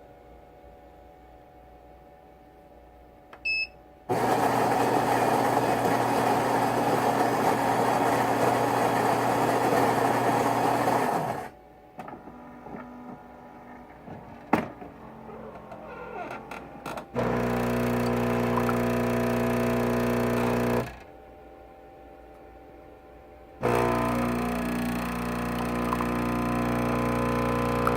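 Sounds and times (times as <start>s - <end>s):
espresso machine pump running: 4.1s - 11.6s, 17.1s - 20.9s, 23.6s - 27.9s.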